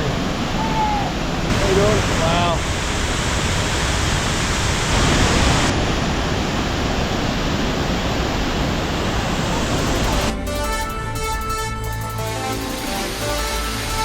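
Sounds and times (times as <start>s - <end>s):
waterfall rushing: 0.0s - 14.0s
music: 9.8s - 14.0s.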